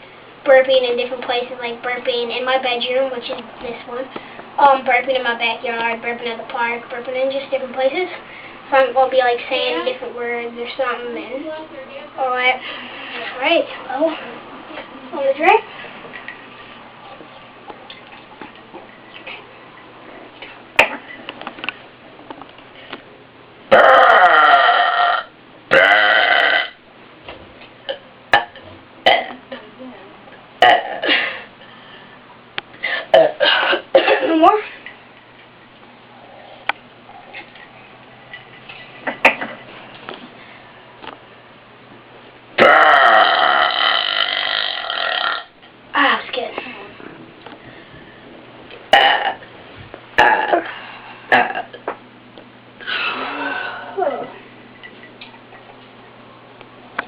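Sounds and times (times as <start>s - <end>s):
person burping loudly: 23.7s - 26.8s, 27.9s - 29.4s, 30.6s - 31.2s, 33.1s - 33.8s, 42.6s - 45.5s, 48.9s - 49.4s, 50.2s - 50.7s, 51.3s - 51.8s.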